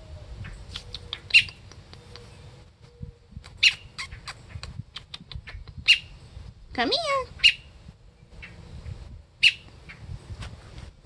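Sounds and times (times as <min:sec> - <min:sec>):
baby bird squawking: 0:03.6 - 0:04.4, 0:07.1 - 0:07.7.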